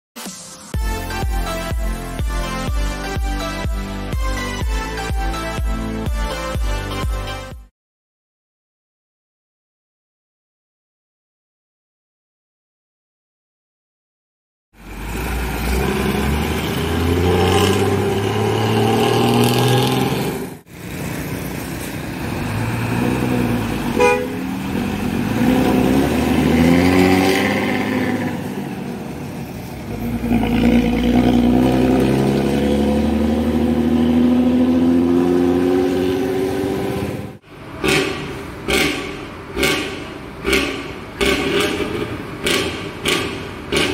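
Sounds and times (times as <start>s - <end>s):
bus engines revving: 14.8s - 43.9s.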